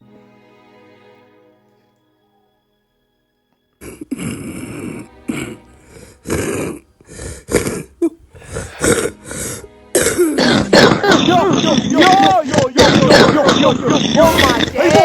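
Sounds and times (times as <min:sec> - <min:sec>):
person coughing harshly: 0:10.0 - 0:15.0.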